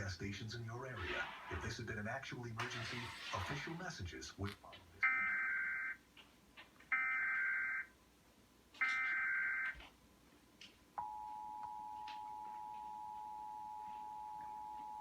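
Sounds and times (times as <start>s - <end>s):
buzzy digital data bursts: 2.6s - 4.0s.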